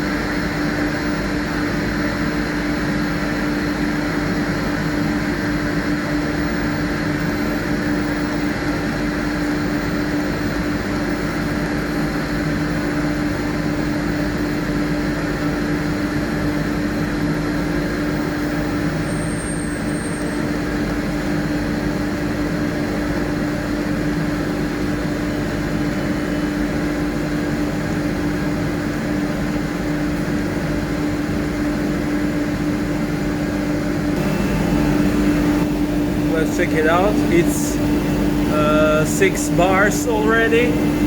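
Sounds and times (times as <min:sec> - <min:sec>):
air compressor running: 0:34.1 - 0:41.0.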